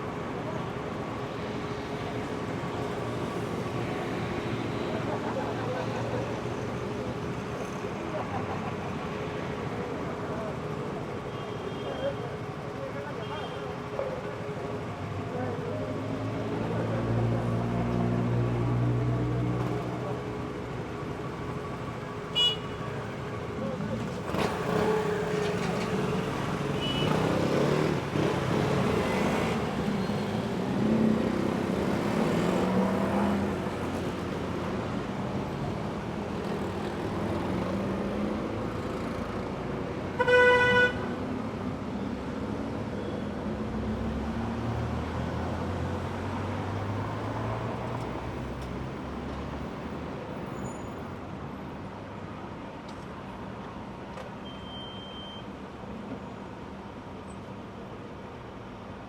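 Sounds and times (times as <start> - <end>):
car horn honk: 22.4 - 22.8, 40.2 - 41.0
cars passing: 24.0 - 42.8, 43.4 - 50.5.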